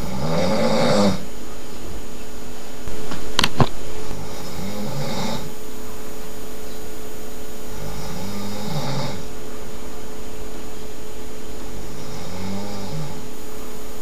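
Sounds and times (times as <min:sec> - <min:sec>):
person snoring loudly: 0:00.0 - 0:01.3, 0:04.1 - 0:05.6, 0:07.7 - 0:09.3, 0:11.8 - 0:13.4.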